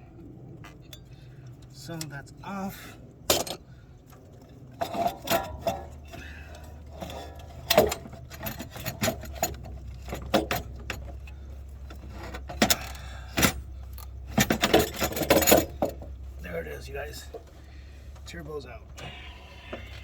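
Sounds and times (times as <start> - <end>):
steady low hum: 0.0 - 20.0
metallic clinks and knocks: 3.3 - 16.4.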